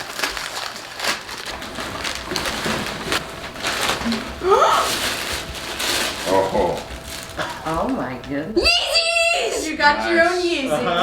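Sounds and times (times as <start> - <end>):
wrapping paper crinkling and tearing: 0.0 - 8.3.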